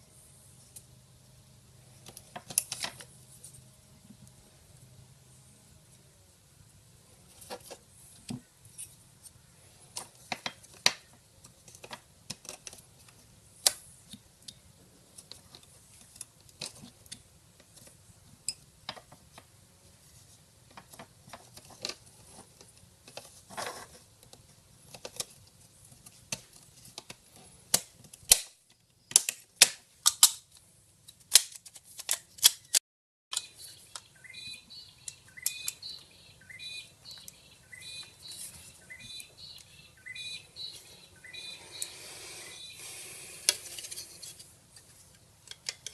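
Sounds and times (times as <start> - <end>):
birds chirping: 33.3 - 43.4.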